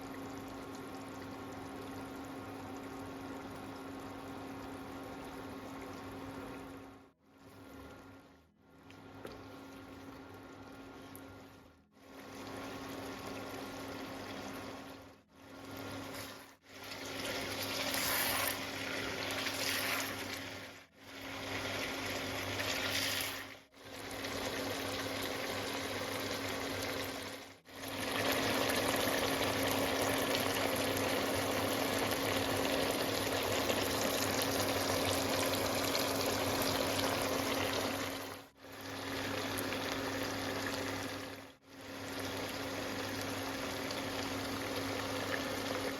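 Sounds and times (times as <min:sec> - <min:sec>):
meat sizzling in oil: 0:16.1 - 0:20.6.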